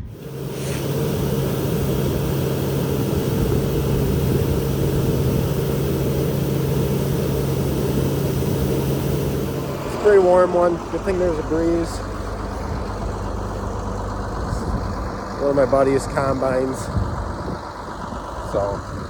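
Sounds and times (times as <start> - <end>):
wind on microphone: 0.0 - 10.1
heavy machine engine humming: 0.0 - 19.0.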